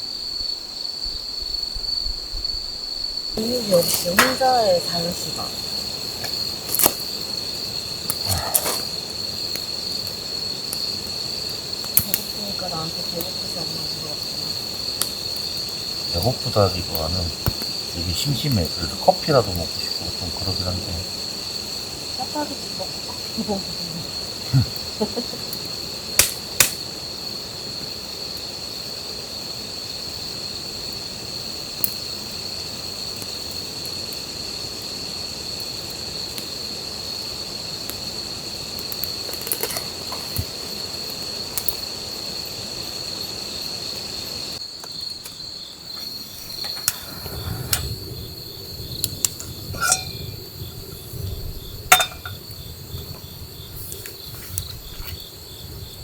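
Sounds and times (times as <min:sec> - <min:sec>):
insects calling high tone: 0:00.0 - 0:56.0.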